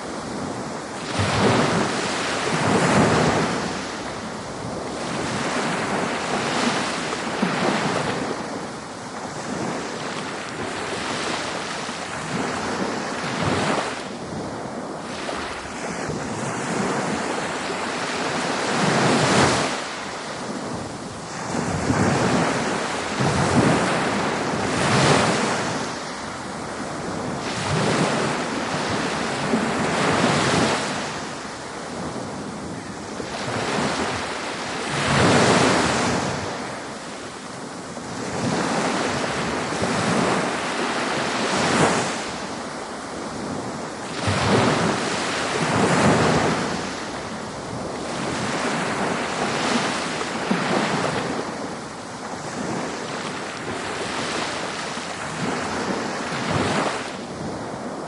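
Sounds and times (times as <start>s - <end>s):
ocean waves washing onto beach: 0.0s - 58.0s.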